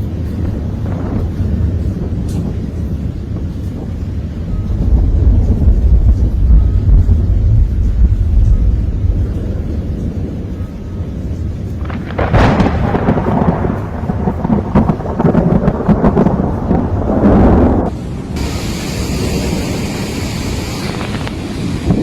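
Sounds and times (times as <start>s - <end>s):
thunder rumbling and crackling: 0.0s - 22.0s
thunderclap: 0.0s - 22.0s
steady hiss: 17.8s - 22.0s.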